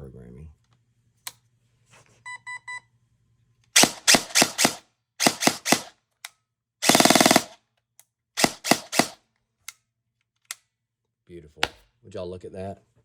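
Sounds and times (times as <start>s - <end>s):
airsoft gun single shots: 3.8s - 5.9s, 8.4s - 9.2s
airsoft gun full-auto burst: 3.8s - 6.0s, 6.8s - 7.6s, 8.4s - 9.2s.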